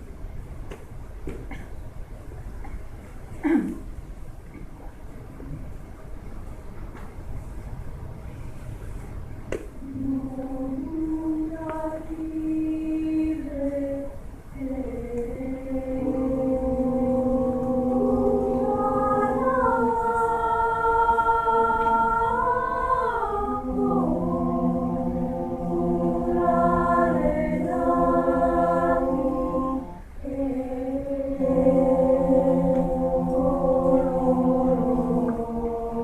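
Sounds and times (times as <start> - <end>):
choir singing sustained chords: 9.8 - 36.0.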